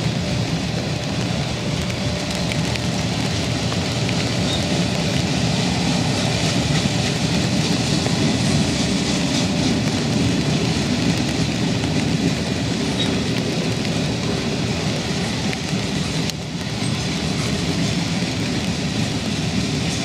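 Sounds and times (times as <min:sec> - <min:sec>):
freight train rumbling past: 0:00.0 - 0:20.0
faint rail clicks: 0:09.2 - 0:14.1, 0:14.8 - 0:20.0.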